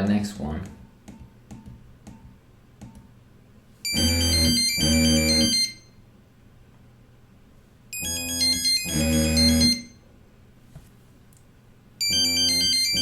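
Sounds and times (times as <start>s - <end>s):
electronic ringtone melody: 3.9s - 5.9s, 8.0s - 10.0s, 12.0s - 13.0s.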